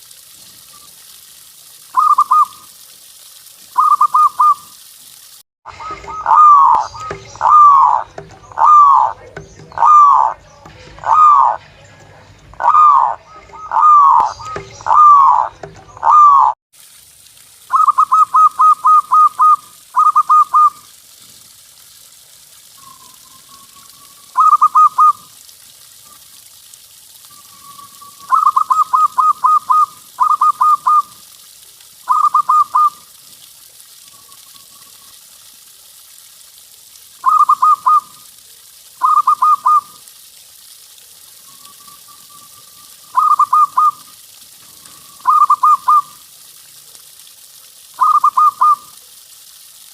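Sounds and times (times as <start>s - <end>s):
dove pulsed cooing: 1.9s - 2.6s, 3.7s - 4.7s, 5.8s - 10.4s, 11.0s - 11.6s, 12.6s - 16.6s, 17.7s - 20.9s, 22.7s - 26.3s, 27.3s - 31.3s, 32.0s - 33.2s, 37.2s - 38.3s, 38.9s - 40.1s, 41.4s - 46.3s, 47.9s - 49.0s.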